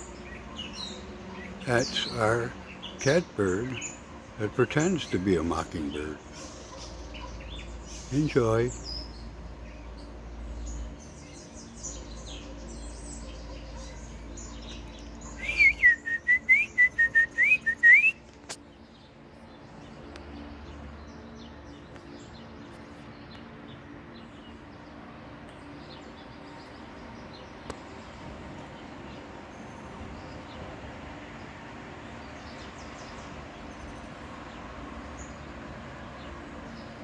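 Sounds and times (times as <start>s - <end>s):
quick whistled bird notes: 15.2s - 18.6s.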